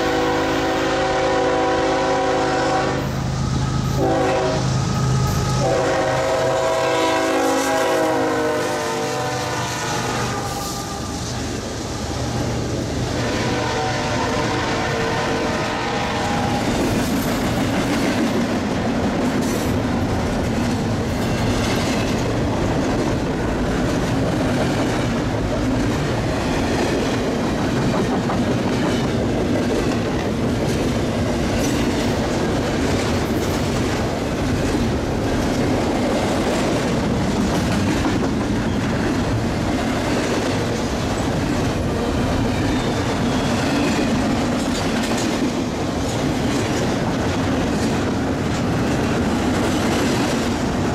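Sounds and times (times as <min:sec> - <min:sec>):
train wheels rumbling on rails: 0:00.0 - 0:50.9
wheels clicking over rail joints: 0:16.7 - 0:50.9.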